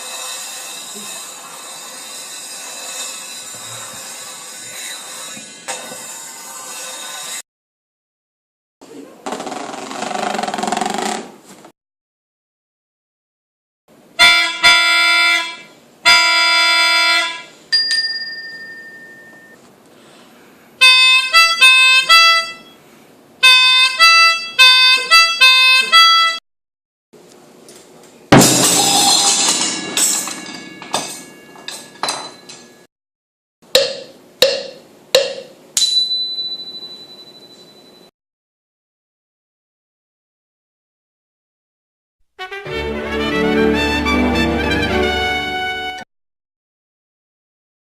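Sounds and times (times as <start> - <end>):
ringing tone: 17.8 - 19.6, 35.8 - 38.1
short pitched notes: 28.3 - 29.9
loud crash: 28.3 - 30.8
short hits: 28.3 - 31.4.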